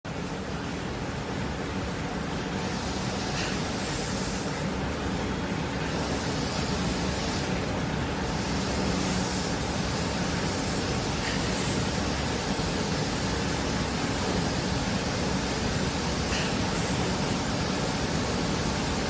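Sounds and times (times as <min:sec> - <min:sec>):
machinery hum: 0:00.1 - 0:19.0
paint spraying hiss: 0:02.6 - 0:04.7, 0:05.8 - 0:07.6, 0:08.2 - 0:19.0.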